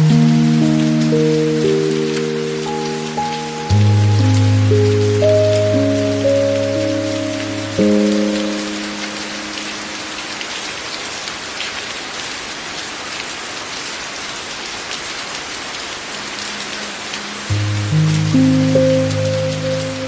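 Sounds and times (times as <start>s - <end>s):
held musical chord: 0.0s - 10.1s, 17.5s - 20.0s
rain falling: 0.0s - 20.0s.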